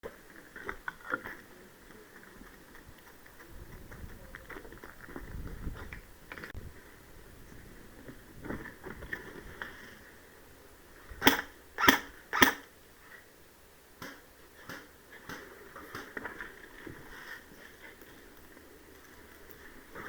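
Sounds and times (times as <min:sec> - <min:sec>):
airsoft gun shots: 0:11.2 - 0:12.7
faint ticks of movement: 0:17.6 - 0:20.0.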